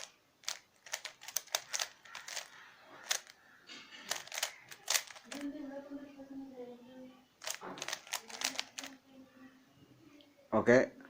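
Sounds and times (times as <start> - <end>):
puzzle cube plastic clicks: 0.0 - 3.4, 4.0 - 5.4, 7.4 - 9.0.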